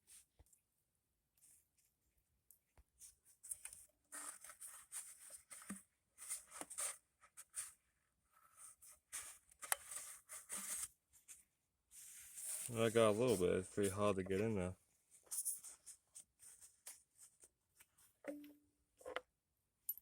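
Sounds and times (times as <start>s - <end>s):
scraping and rustling: 8.5s - 18.0s.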